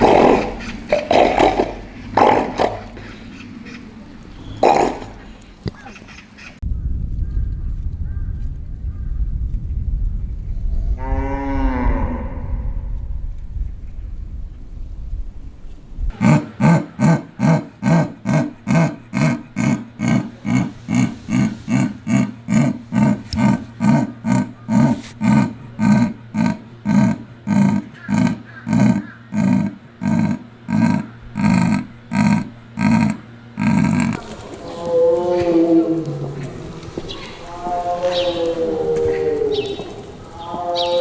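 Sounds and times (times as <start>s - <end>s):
big cat grunting: 0.0s - 6.6s, 16.1s - 41.0s.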